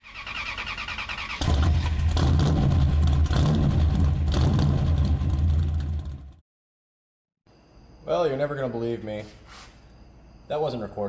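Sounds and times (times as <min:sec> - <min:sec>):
car engine cranking and starting: 0:00.0 - 0:06.4
car engine deep rumble: 0:01.4 - 0:06.4.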